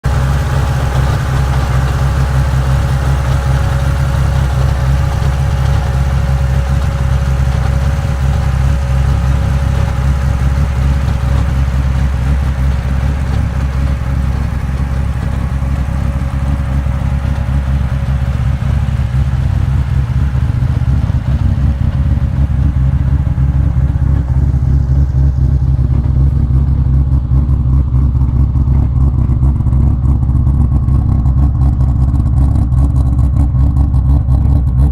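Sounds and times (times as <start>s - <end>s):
car engine idling: 0.0s - 34.9s.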